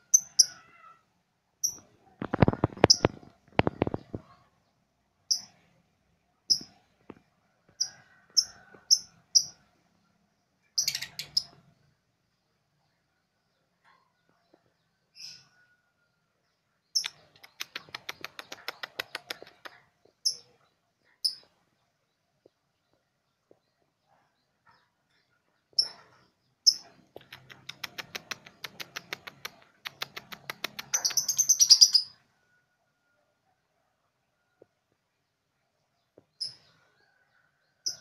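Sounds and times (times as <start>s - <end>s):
lovebird chirping and ticking: 0.0s - 0.9s, 1.6s - 4.5s, 5.2s - 5.7s, 6.5s - 9.7s, 10.7s - 11.8s, 15.1s - 15.7s, 16.9s - 21.6s, 25.7s - 32.3s, 36.2s - 36.9s.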